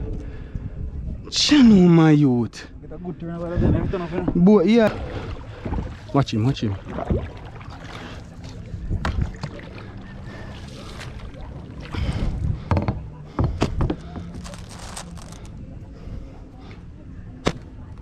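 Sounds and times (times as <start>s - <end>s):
low rumble of water and wind: 0.0s - 18.0s
paddle strokes and splashes: 4.7s - 15.6s.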